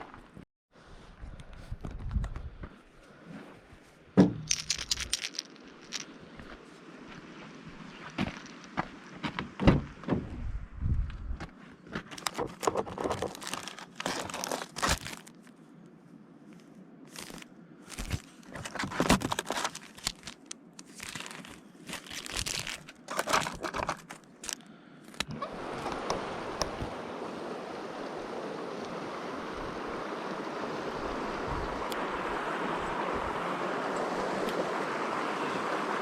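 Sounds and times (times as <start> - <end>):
close handling rustling: 4.4 - 6.1, 11.7 - 15.6, 16.5 - 26.1
river water rushing: 25.3 - 36.0.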